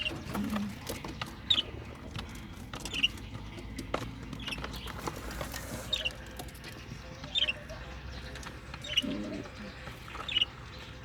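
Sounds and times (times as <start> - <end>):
light taps and scratches: 0.0 - 6.9
bird chirping: 0.0 - 11.0.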